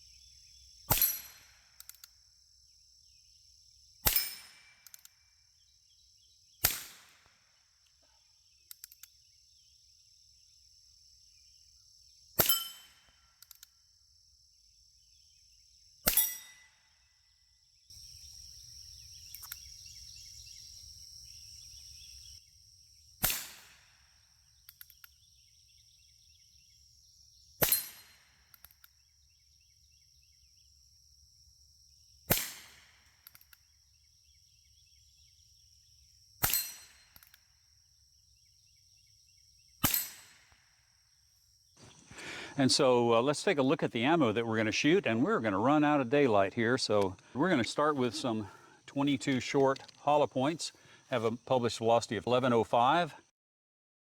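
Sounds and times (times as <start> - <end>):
light clicks: 19.3 - 19.7.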